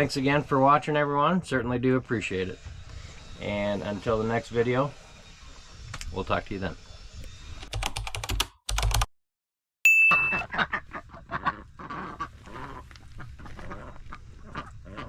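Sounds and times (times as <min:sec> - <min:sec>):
high steady tone: 0:09.9 - 0:10.5
flock of waterfowl calling: 0:10.4 - 0:15.0.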